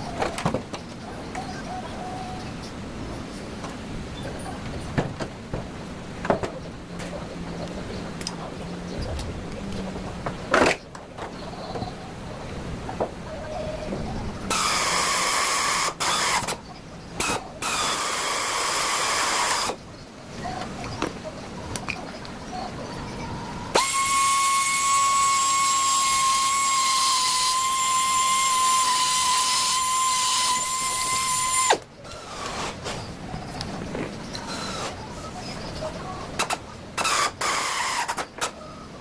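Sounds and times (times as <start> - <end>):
power tool high whine: 14.5 - 16.6, 17.3 - 19.8, 23.8 - 31.8.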